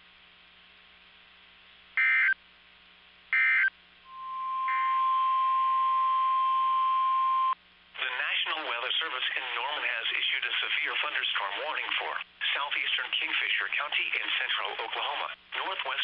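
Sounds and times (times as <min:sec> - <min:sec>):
screechy digital data tones: 0:03.4 - 0:07.6
steady alert tone: 0:04.1 - 0:07.6.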